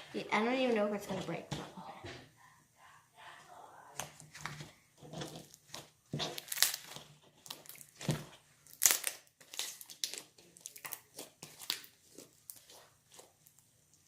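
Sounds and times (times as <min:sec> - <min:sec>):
slime squished by hand: 0:05.3 - 0:14.0.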